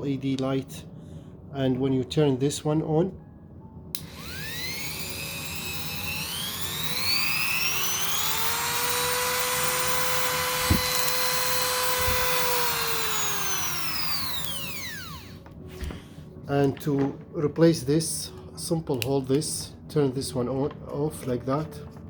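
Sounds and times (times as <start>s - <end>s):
rotary tool motor whine: 4.0s - 15.4s.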